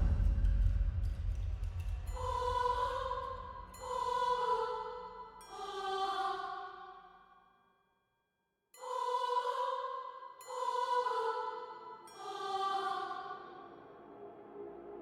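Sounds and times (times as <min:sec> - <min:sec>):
deep low rumble: 0:00.0 - 0:03.7.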